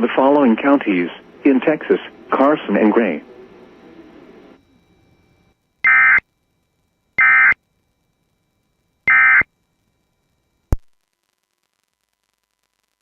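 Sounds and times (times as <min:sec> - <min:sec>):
digital data tone bursts: 0:05.8 - 0:06.2, 0:07.2 - 0:07.6, 0:09.0 - 0:09.5.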